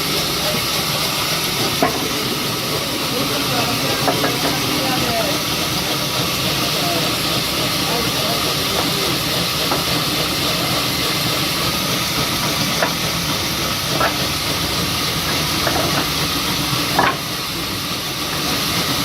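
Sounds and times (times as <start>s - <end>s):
steady hissing noise: 0.0s - 19.0s.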